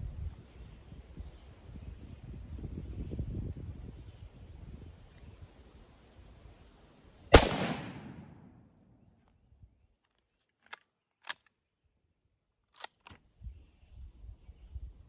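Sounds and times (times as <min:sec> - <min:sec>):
rifle shot: 0:07.3 - 0:08.6
rifle bolt metallic clicks: 0:07.4 - 0:08.5, 0:10.6 - 0:11.6, 0:12.7 - 0:13.2.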